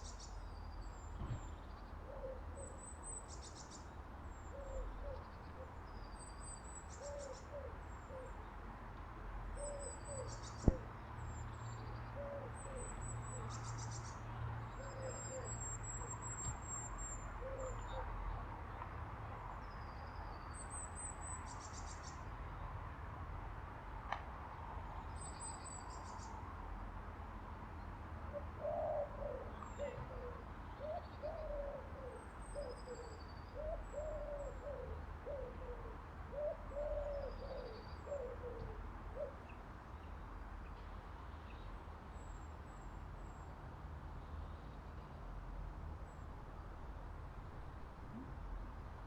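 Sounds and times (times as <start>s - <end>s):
pigeon cooing: 28.5s - 39.4s.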